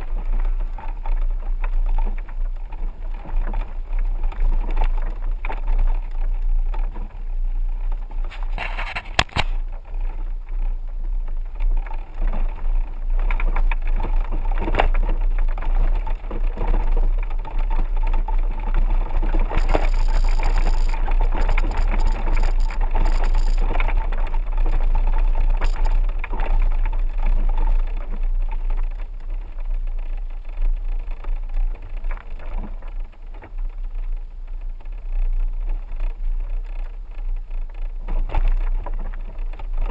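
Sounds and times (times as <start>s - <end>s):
vehicle rumbling on dirt road: 0.0s - 39.9s
knocks and rattles: 19.5s - 23.9s, 25.6s - 26.0s.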